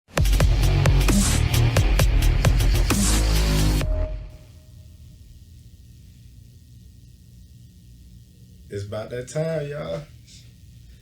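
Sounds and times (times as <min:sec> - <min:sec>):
electronic dance music: 0:00.1 - 0:04.3.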